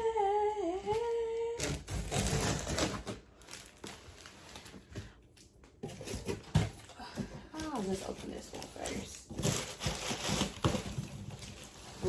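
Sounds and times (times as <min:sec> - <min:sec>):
person humming a note: 0:00.0 - 0:01.8
cardboard packages being opened: 0:00.8 - 0:12.0.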